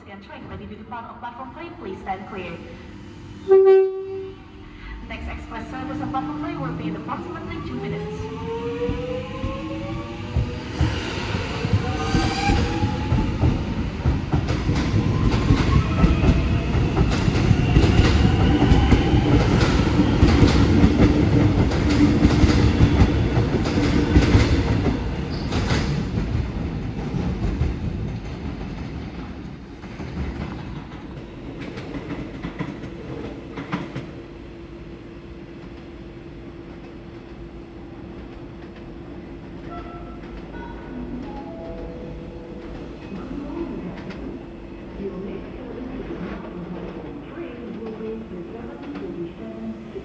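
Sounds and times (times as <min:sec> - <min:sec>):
steady low hum: 0:04.3 - 0:08.3.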